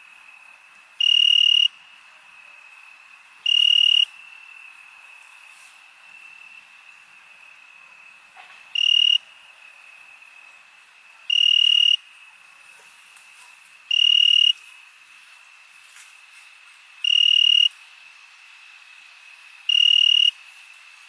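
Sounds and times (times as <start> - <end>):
crickets chirping: 0.0 - 21.0
insect trilling loudly: 1.0 - 1.7, 3.4 - 4.1, 8.8 - 9.2, 11.3 - 12.0, 13.9 - 14.6, 17.0 - 17.7, 19.7 - 20.3.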